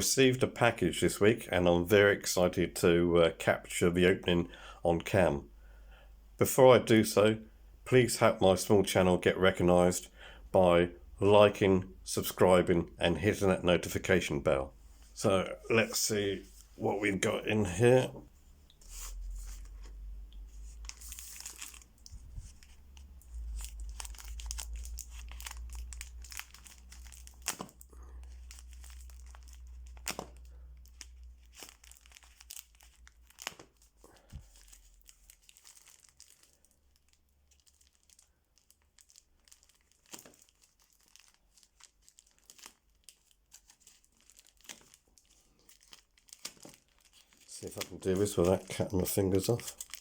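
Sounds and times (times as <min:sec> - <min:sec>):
packaging tearing and crinkling: 0:20.6 - 0:50.0.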